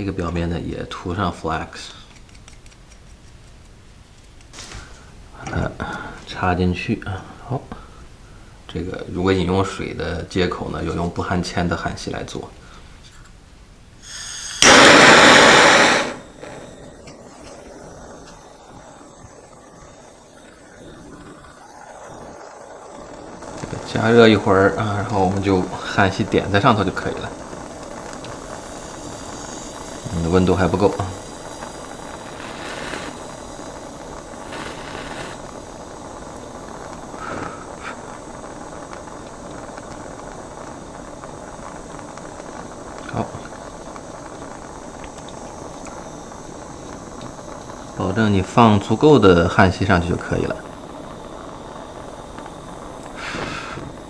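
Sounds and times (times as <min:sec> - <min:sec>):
gas hissing from torch nozzle: 0:00.0 - 0:13.0, 0:14.0 - 0:54.0
torch flame rushing: 0:00.0 - 0:13.0, 0:14.0 - 0:54.0
torch igniting with a pop: 0:01.7 - 0:06.5, 0:14.0 - 0:54.0.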